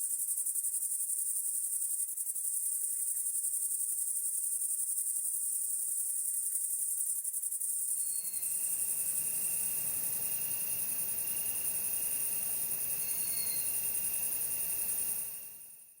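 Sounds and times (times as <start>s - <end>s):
background noise: 0.0s - 16.0s
lower steady insect tone: 0.0s - 16.0s
insects shrilling: 8.0s - 15.8s.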